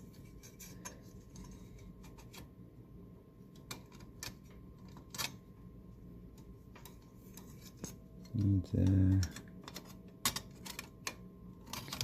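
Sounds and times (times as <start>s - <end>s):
faint steady hum: 0.0s - 12.0s
metal typewriter parts clicking: 8.3s - 12.0s.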